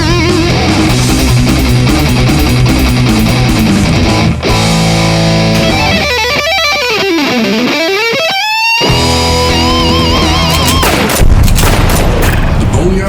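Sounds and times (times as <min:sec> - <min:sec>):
distorted electric guitar: 0:00.0 - 0:10.9
heavy rock music: 0:00.0 - 0:13.0.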